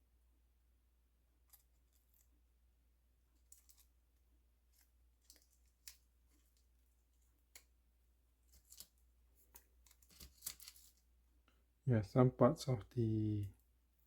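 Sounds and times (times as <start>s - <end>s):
hands handling a model: 1.4s - 2.5s, 3.2s - 11.8s.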